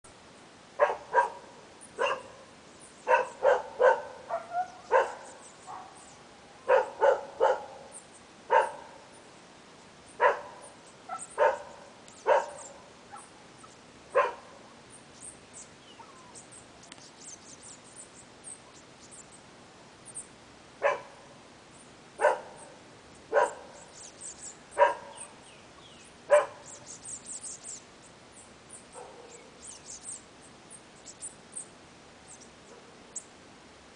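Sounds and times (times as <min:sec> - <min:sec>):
dog barking: 0:00.8 - 0:02.4, 0:03.1 - 0:06.0, 0:06.7 - 0:07.8, 0:08.5 - 0:09.0, 0:10.2 - 0:13.3, 0:14.1 - 0:14.5, 0:20.8 - 0:21.2, 0:22.2 - 0:22.7, 0:23.3 - 0:23.8, 0:24.8 - 0:25.2, 0:26.3 - 0:26.7, 0:29.0 - 0:29.4.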